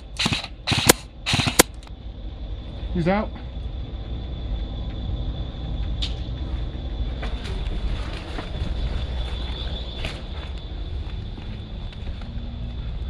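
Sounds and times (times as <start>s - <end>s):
airsoft guns firing: 0.0s - 1.8s
faint high whine: 0.0s - 13.0s
wind rumble on microphone: 3.6s - 13.0s.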